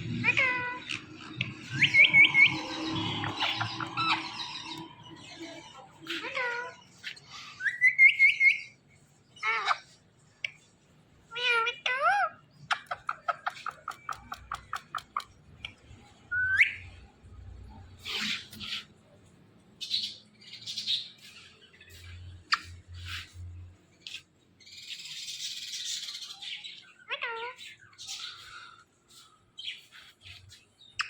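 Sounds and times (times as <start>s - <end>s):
parrot chirping and squawking: 0.0s - 5.4s, 6.0s - 10.0s, 11.3s - 15.4s, 24.0s - 28.8s.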